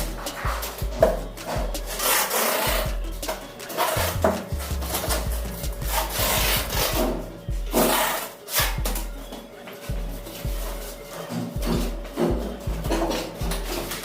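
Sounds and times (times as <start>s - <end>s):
hand tool rasping over surface: 0.0s - 9.0s.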